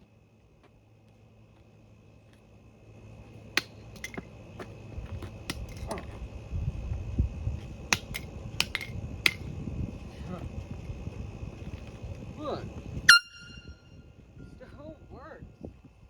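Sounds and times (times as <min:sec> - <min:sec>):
low rumbling noise: 0:00.0 - 0:16.0.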